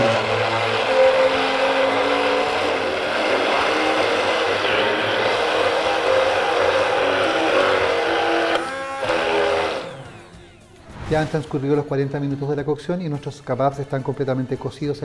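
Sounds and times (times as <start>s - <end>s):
electric blender running: 0.0s - 10.9s.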